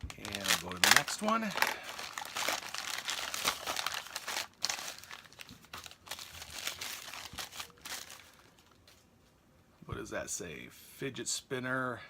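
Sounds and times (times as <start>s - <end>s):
packaging crinkling and rustling: 0.0s - 9.0s.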